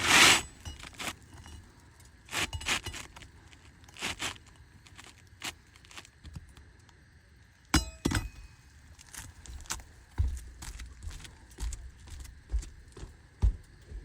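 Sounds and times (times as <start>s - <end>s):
metal hand tools clinking: 0.0s - 3.2s
dull thumps: 9.5s - 11.9s.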